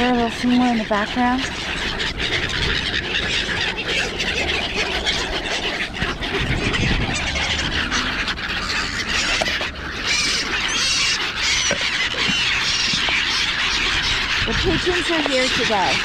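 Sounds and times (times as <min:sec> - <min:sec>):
birds squawking: 0:00.0 - 0:16.0.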